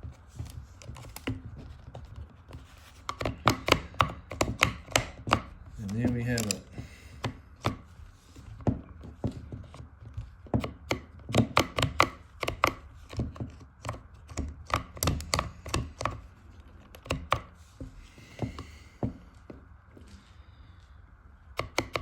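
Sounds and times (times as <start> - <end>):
chainsaw parts clicking and knocking: 3.1 - 7.7.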